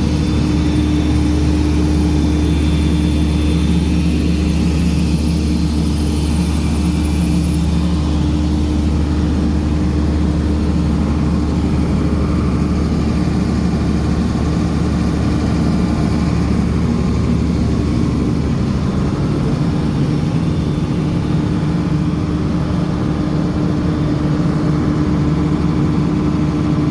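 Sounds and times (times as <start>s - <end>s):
heavy machinery engine running: 0.0s - 26.9s.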